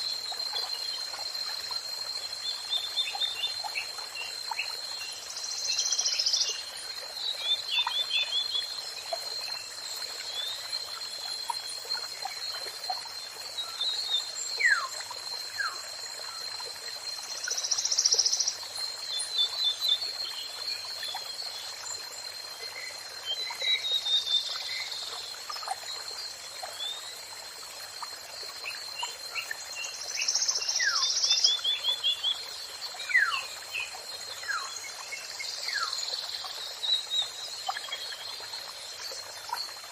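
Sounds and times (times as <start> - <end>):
constant hiss: 0.0 - 39.9.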